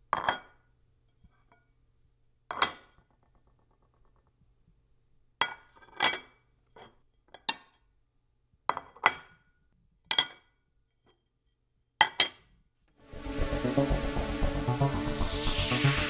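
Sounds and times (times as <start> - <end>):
music: 13.0 - 16.0.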